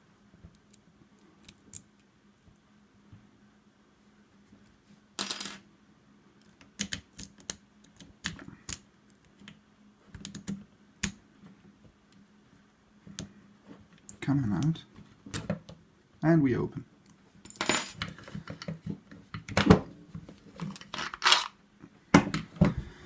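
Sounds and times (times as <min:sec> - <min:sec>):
lock picks clicking and scraping: 0:20.7 - 0:21.6.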